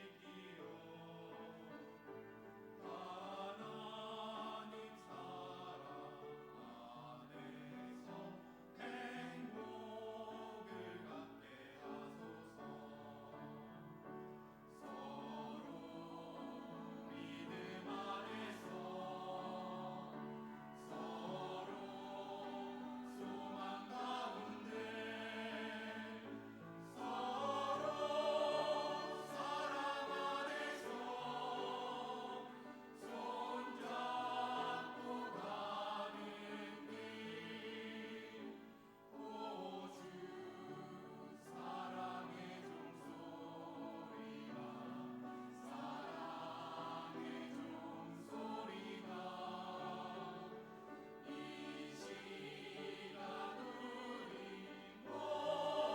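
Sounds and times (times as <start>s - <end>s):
choir singing gospel: 0.0s - 55.9s
low musical accompaniment: 0.0s - 55.9s.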